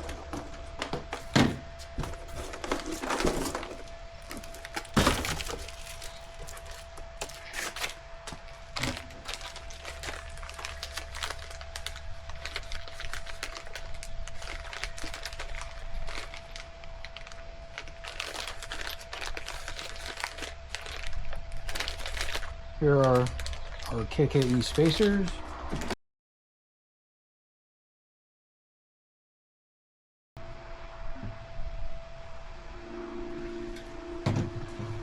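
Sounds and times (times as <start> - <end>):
faint steady hum: 0.0 - 26.0, 30.4 - 35.0
plastic packaging crinkling: 0.0 - 26.0.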